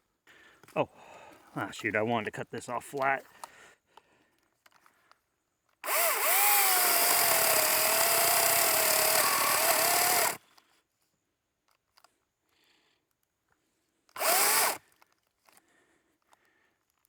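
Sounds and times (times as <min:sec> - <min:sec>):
chainsaw cutting wood: 0:05.8 - 0:10.4, 0:14.1 - 0:14.9.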